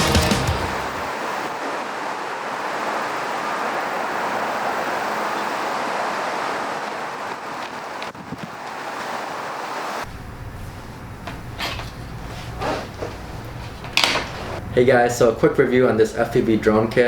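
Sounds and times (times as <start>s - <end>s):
steady rushing noise: 0.0s - 11.1s.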